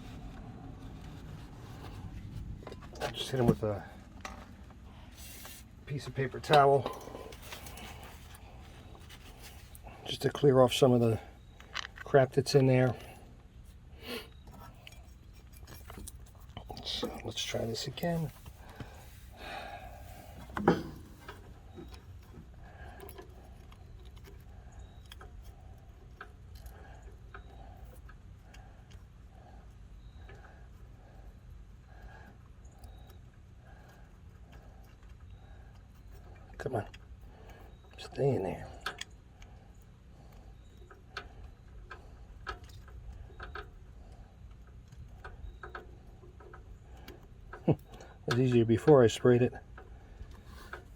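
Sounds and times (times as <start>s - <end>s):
small metal clicks and ticks: 5.9s - 50.9s
small metal parts clicking: 11.6s - 13.0s.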